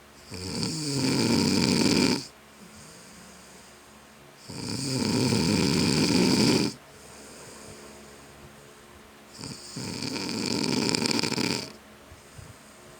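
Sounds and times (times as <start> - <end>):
man snoring: 0.2 - 3.2, 4.4 - 6.8, 9.3 - 11.8
quiet breath: 2.5 - 4.1, 6.8 - 9.8, 11.7 - 12.9.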